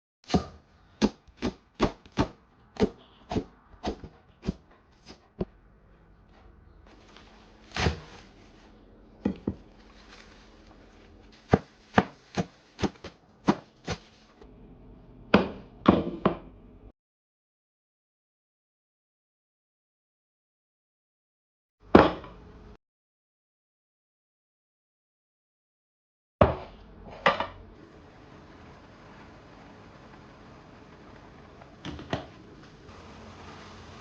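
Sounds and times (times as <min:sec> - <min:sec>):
knife chopping on cutting board: 0:00.3 - 0:05.2, 0:07.8 - 0:08.1, 0:11.4 - 0:14.0.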